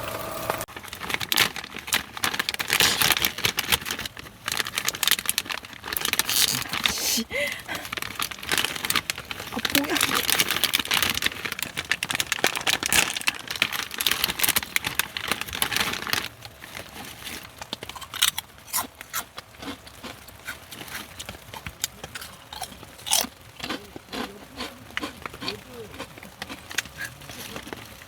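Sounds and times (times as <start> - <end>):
crinkling and crunching: 0.6 - 28.0
clicks and rustles: 0.7 - 18.4.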